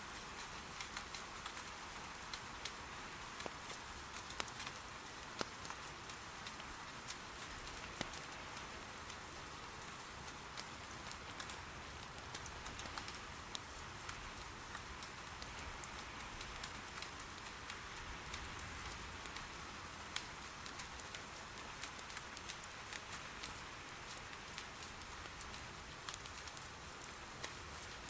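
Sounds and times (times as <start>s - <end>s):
soft rain: 0.0s - 28.0s
wood fire popping: 20.1s - 26.7s.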